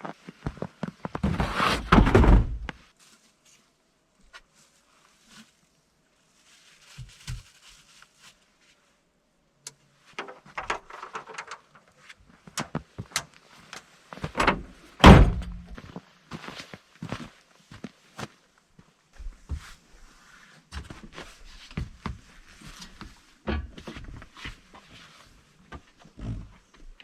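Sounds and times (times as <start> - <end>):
heavy thump: 15.0 - 15.8.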